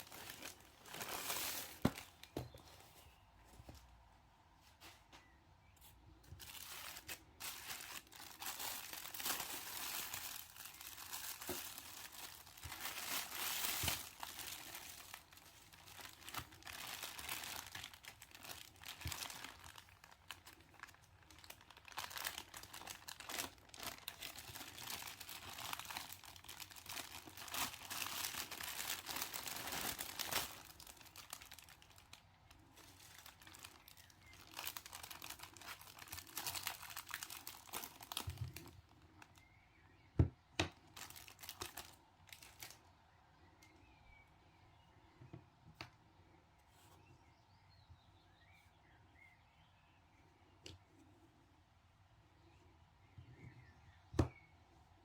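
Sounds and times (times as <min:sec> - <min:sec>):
packaging crinkling and rustling: 0:00.0 - 0:03.8, 0:06.3 - 0:39.5, 0:40.7 - 0:42.8
packaging tearing: 0:06.4 - 0:32.2, 0:32.8 - 0:38.8.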